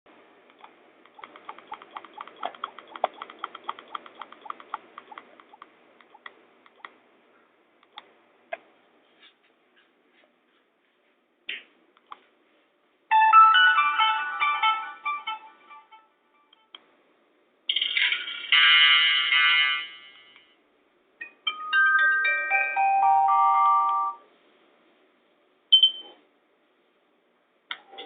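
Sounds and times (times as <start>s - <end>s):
phone ringtone melody: 13.1s - 16.1s, 21.5s - 24.2s.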